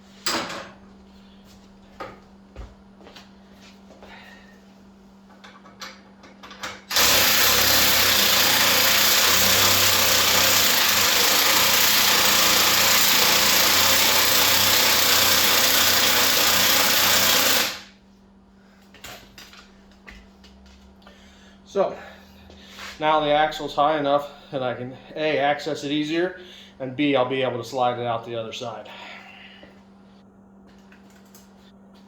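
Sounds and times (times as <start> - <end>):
powered lift running: 6.8 - 17.9.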